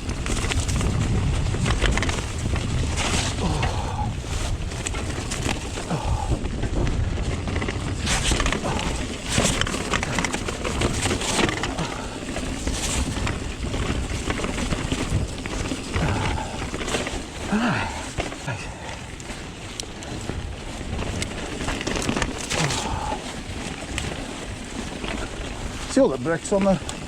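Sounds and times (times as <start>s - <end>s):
mountain bike rattling on rough trail: 0.0s - 27.0s
wind buffeting microphone: 0.0s - 27.0s.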